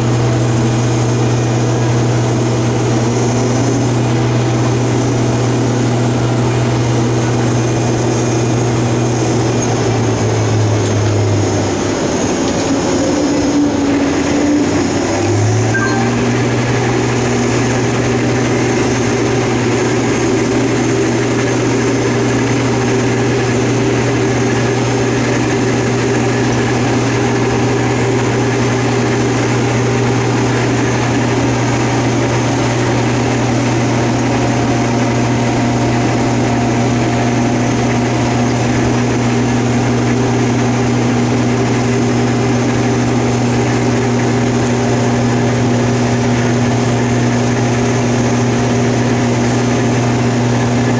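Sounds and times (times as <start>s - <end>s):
combine harvester engine drone: 0.0s - 50.9s
higher machine tone: 15.4s - 17.6s.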